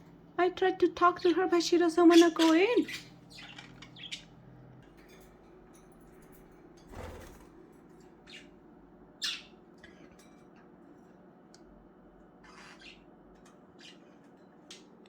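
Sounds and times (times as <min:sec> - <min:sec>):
faint steady hum: 0:00.0 - 0:15.0
budgerigars chirping and squawking: 0:00.9 - 0:04.4, 0:08.2 - 0:08.6, 0:09.2 - 0:10.1, 0:12.4 - 0:14.9.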